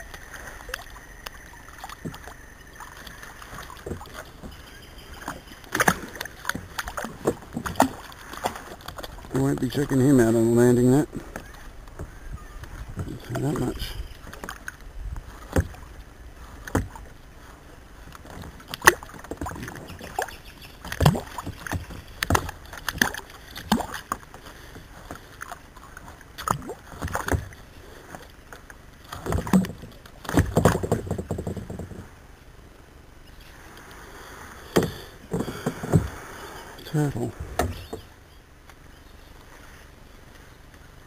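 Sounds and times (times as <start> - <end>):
water sloshing and splashing: 0.0 - 32.4
knocks on kayak hull: 29.3 - 32.0.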